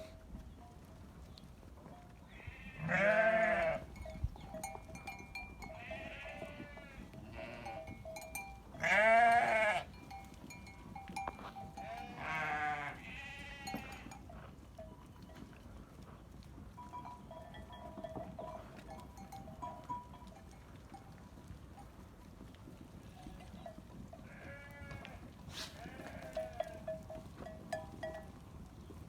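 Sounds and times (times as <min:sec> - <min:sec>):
sheep bleating: 0:02.3 - 0:03.9, 0:05.6 - 0:08.0, 0:08.8 - 0:10.0, 0:11.4 - 0:14.2, 0:24.3 - 0:26.8.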